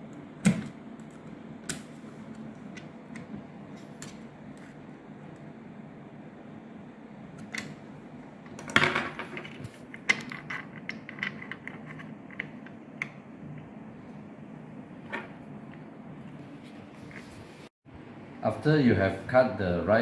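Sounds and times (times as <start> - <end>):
lock parts rattling: 8.5 - 13.2
metal lock parts clicking: 8.5 - 13.2.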